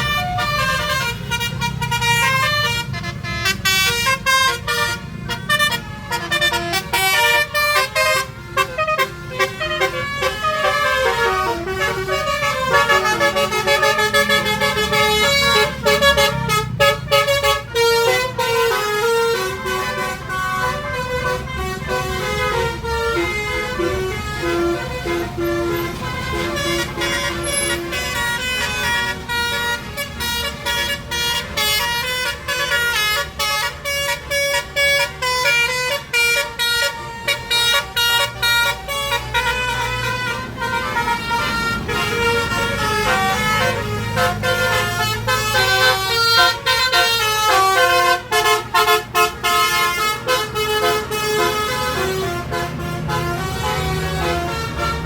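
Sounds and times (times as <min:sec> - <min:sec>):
bus engines running: 0:00.0 - 0:55.0
multi-tone air horns playing: 0:00.0 - 0:55.0.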